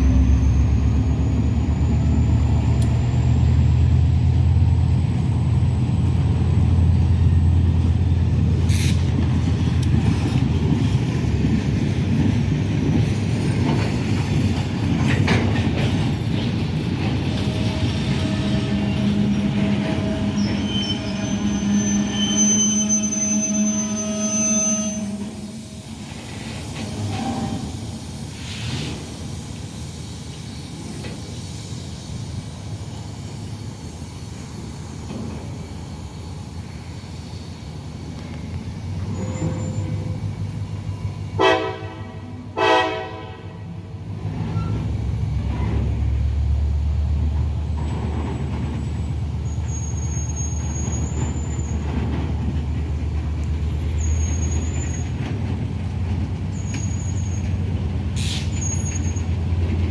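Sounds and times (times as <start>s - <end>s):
locomotive air horn blasts: 17.6s - 25.6s, 41.4s - 43.7s.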